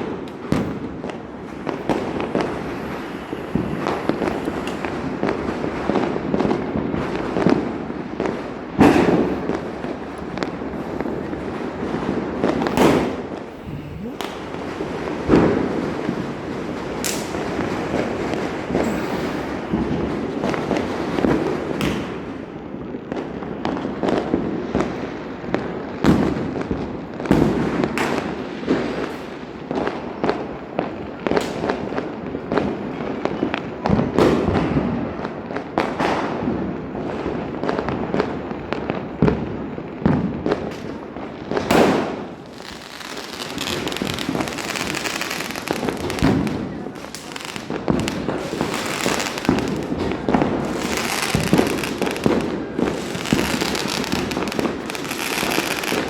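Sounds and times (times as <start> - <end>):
firecrackers banging: 0.0 - 56.0
continuous crackling: 42.3 - 56.0.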